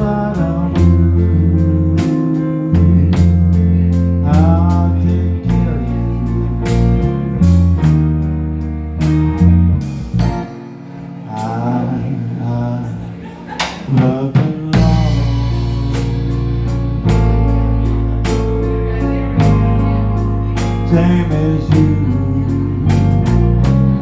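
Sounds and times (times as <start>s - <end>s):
bass notes: 0.0s - 24.0s
guitar bending lead phrases: 0.0s - 24.0s
steady drum beat: 13.6s - 24.0s.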